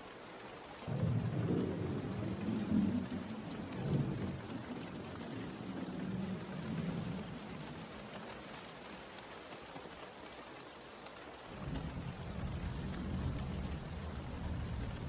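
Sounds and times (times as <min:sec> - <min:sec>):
steady rain falling: 0:00.0 - 0:15.0
thunder rumbling: 0:00.9 - 0:07.6, 0:11.5 - 0:15.0.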